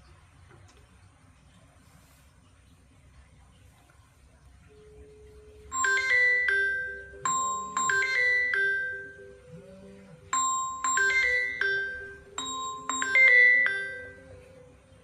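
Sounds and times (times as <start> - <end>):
bell-like phone ringtone: 5.6 - 9.5, 10.2 - 14.7.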